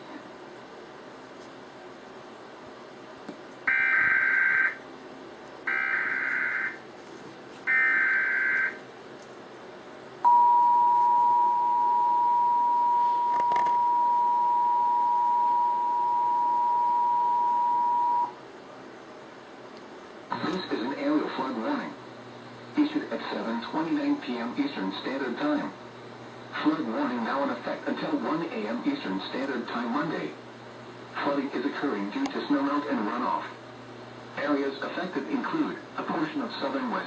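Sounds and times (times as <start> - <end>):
two-tone attention signal: 10.3 - 18.4.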